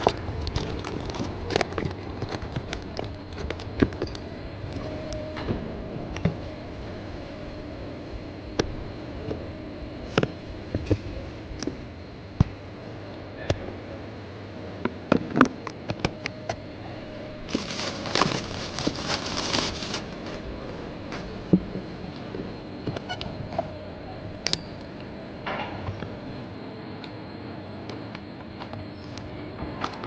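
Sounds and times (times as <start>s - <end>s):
faint steady hum: 0.0s - 30.0s
rustling and scraping: 17.3s - 21.7s.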